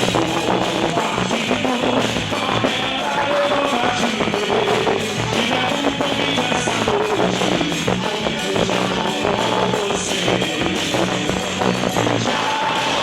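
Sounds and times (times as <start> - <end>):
folk dance music: 0.0 - 13.0.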